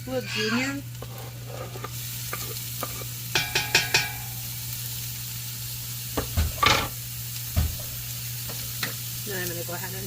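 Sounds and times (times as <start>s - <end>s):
onions and ham sizzling in oil: 0.0s - 10.0s
utensil clacking against pot: 3.3s - 4.2s.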